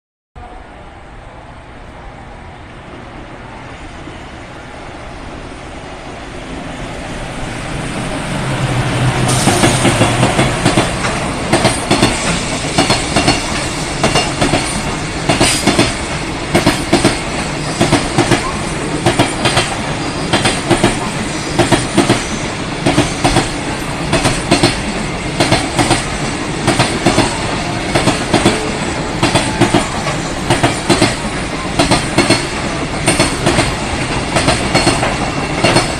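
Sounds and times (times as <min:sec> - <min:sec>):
locomotive passing hum: 0:00.4 - 0:35.9
train wheels clickety-clack: 0:09.1 - 0:35.9.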